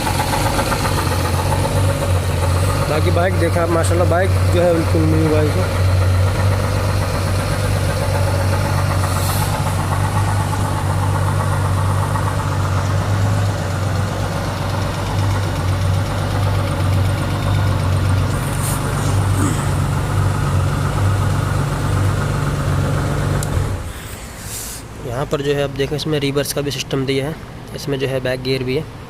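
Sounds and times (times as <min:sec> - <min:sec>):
motorcycle engine idling: 0:00.0 - 0:24.0
abnormal engine noise: 0:00.0 - 0:29.0.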